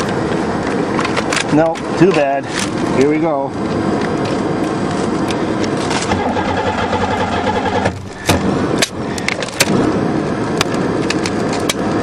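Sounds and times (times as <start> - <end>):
engine cranking without starting: 6.0 - 8.4.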